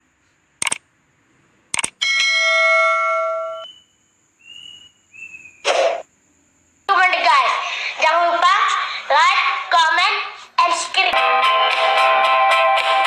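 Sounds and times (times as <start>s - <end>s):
bell-like ding: 2.0s - 3.7s
faint high tones: 2.4s - 4.0s.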